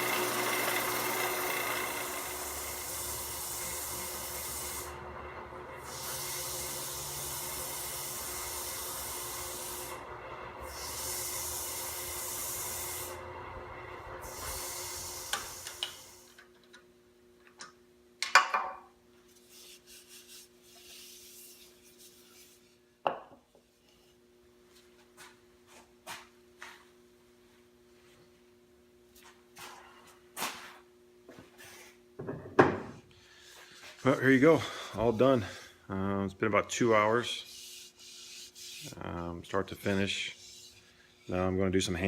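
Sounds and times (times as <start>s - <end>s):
lathe running down: 0.0s - 16.2s
wood lathe rasping hiss: 0.0s - 16.4s, 36.7s - 42.0s.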